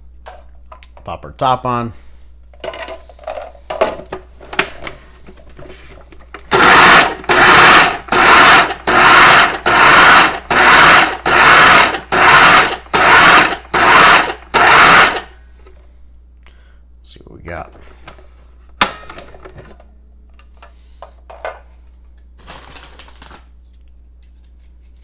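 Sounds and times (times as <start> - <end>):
food processor motor pulsing: 6.4 - 15.4.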